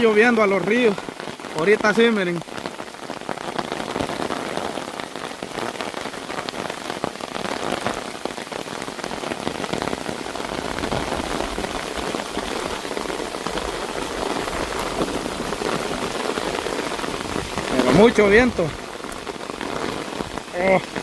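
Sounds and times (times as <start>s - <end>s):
heavy rain falling: 0.0s - 21.0s.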